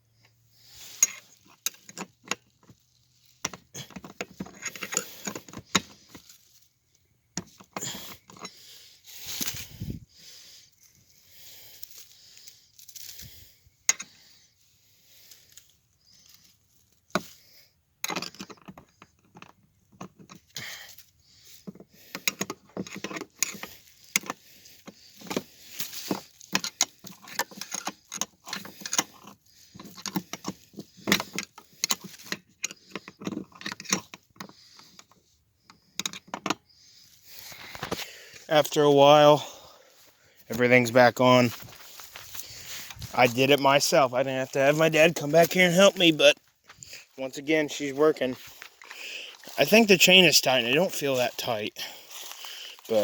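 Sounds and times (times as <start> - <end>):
tools and metal parts clinking: 0.9 - 6.4, 7.4 - 8.6, 18.0 - 20.9, 21.6 - 35.2.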